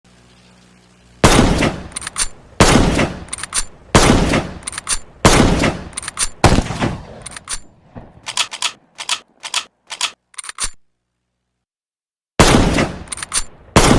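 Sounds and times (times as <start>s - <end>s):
rifle shots: 1.2s - 10.1s, 12.4s - 13.9s
rifle bolt clicks: 1.9s - 2.4s, 3.3s - 3.7s, 4.6s - 5.1s, 5.9s - 6.4s, 7.2s - 10.8s, 13.0s - 13.5s.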